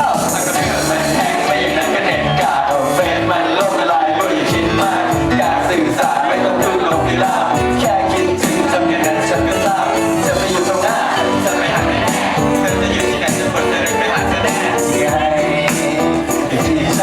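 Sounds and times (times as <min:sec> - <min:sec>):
music with singing: 0:00.0 - 0:17.0.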